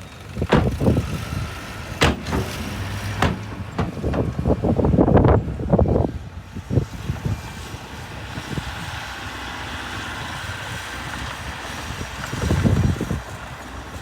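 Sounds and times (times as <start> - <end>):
diesel engine running: 0.0 - 14.0
low thumps: 0.4 - 5.6.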